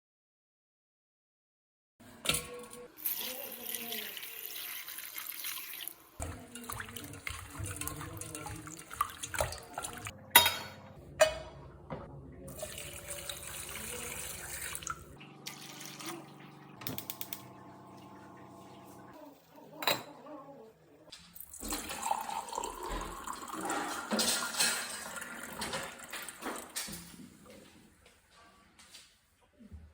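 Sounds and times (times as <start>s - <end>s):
water running from tap: 3.0s - 10.1s, 12.5s - 19.1s, 21.4s - 27.0s
small clicks: 16.8s - 17.5s.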